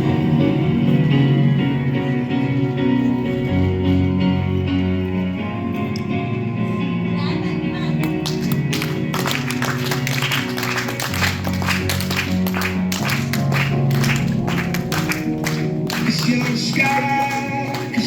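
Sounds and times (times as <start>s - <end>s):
pop music with beat and bass: 12.3s - 18.0s.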